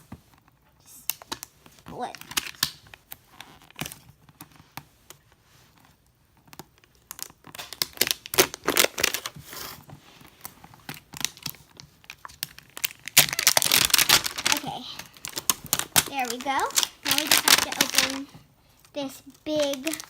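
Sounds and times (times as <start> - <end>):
toy packaging ripping and crinkling: 1.2 - 2.8, 7.1 - 9.7, 10.9 - 20.0.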